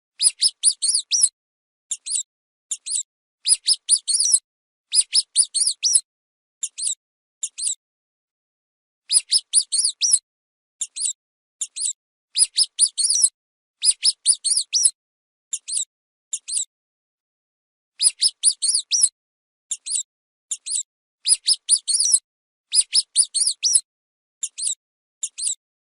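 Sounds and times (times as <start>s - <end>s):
mouse squeaking: 0.2s - 7.8s, 9.1s - 10.2s, 10.8s - 16.7s, 18.0s - 25.6s.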